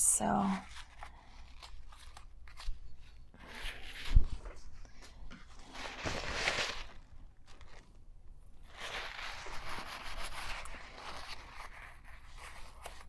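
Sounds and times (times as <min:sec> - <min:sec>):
scraping and rustling handling: 0:00.6 - 0:07.9.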